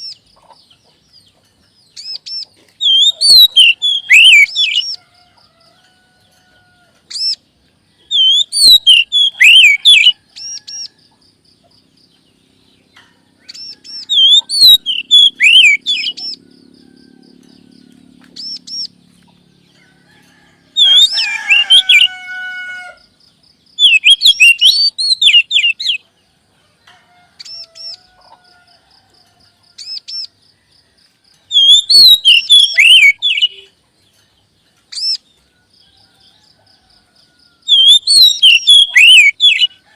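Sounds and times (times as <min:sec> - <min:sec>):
magpie-robin song: 0:00.0 - 0:05.0, 0:07.1 - 0:11.0, 0:11.8 - 0:16.8, 0:17.4 - 0:19.7, 0:20.8 - 0:22.5, 0:23.7 - 0:26.1, 0:29.8 - 0:30.3, 0:31.5 - 0:35.4, 0:37.7 - 0:39.8.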